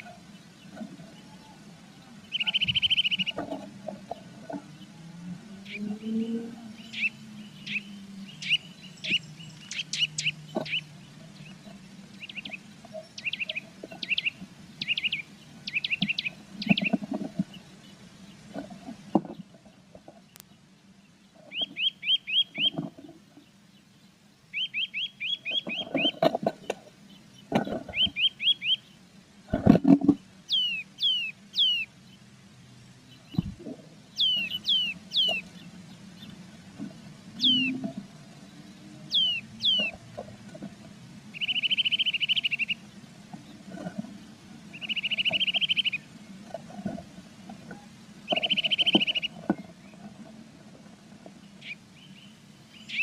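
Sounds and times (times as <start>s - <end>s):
birds chirping: 0.0s - 53.0s
falling whistled bird calls: 2.3s - 3.4s, 21.5s - 22.8s, 30.5s - 31.9s, 34.2s - 35.4s, 37.4s - 37.8s, 39.1s - 40.0s, 41.4s - 42.8s, 48.3s - 49.4s.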